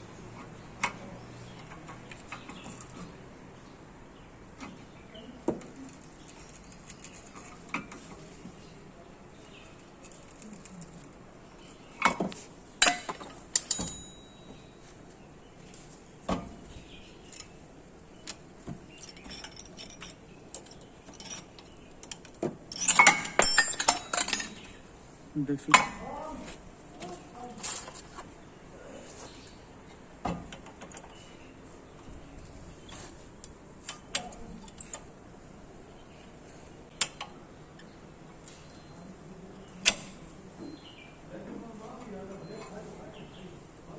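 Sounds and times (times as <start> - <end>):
metal tools clinking and knocking: 12.0 - 14.9, 18.2 - 24.8.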